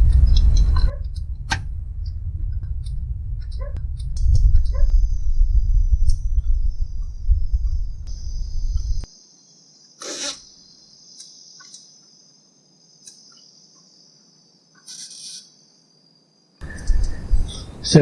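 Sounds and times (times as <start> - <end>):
loud low rumble: 0.0 - 9.1, 16.6 - 18.0
crickets chirping: 0.0 - 18.0.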